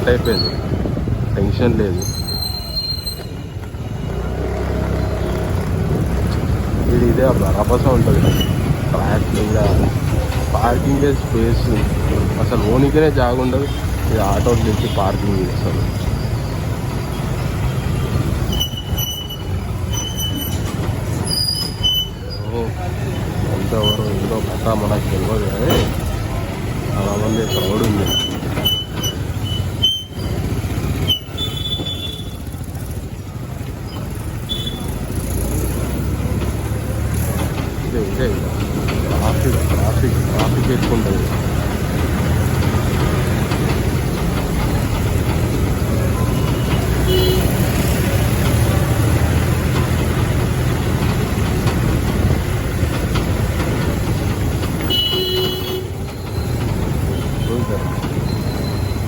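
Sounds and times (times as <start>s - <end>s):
wind rushing on microphone: 0.0s - 2.7s, 5.6s - 12.8s
busy road traffic: 0.0s - 59.0s
motorcycle riding: 0.0s - 59.0s.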